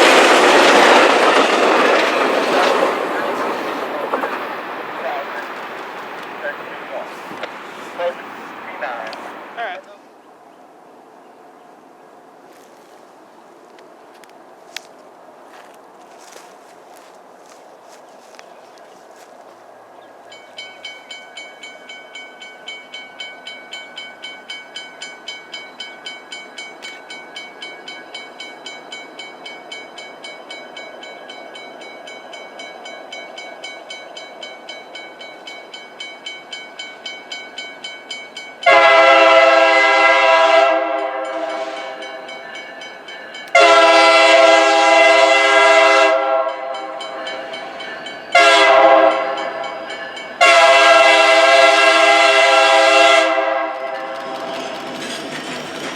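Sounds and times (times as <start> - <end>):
railroad crossing bell ringing: 1.0 - 9.8, 20.2 - 55.9
locomotive air horn blasts: 38.6 - 42.2, 43.5 - 47.4, 48.3 - 49.6, 50.4 - 54.2.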